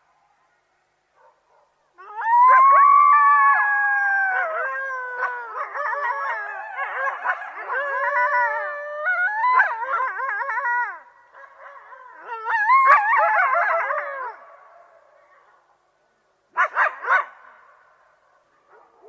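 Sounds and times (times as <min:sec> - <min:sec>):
coyotes howling: 0:02.0 - 0:14.7.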